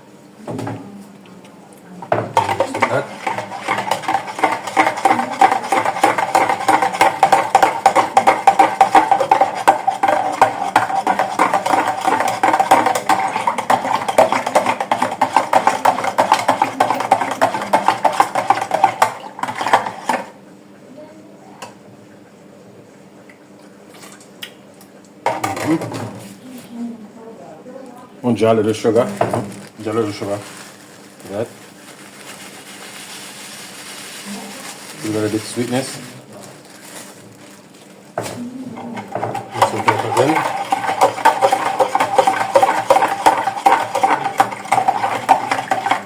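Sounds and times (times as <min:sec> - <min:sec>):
spoon clinking in a jug: 0:39.3 - 0:46.0.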